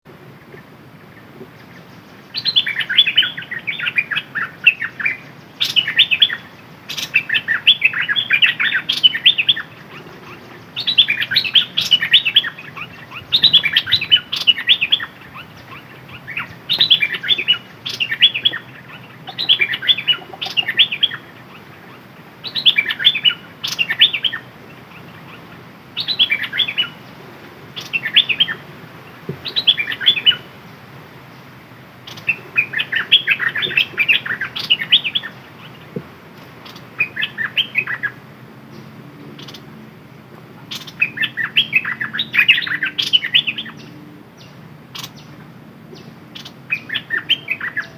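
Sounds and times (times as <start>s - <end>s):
songbird chattering song: 0.1s - 47.9s.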